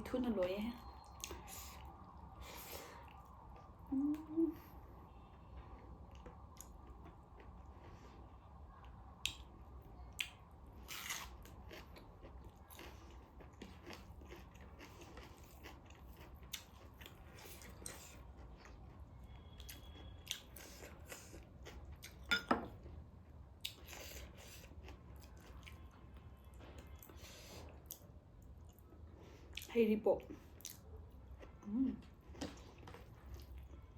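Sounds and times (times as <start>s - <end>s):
close chewing and biting: 10.1s - 23.0s.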